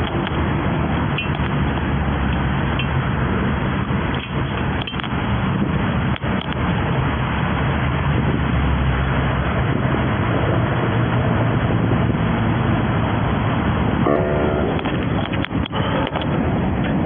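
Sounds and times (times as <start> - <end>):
low engine hum: 0.0 - 17.0
vehicles passing: 0.0 - 17.0
brief horn tone: 14.1 - 14.8.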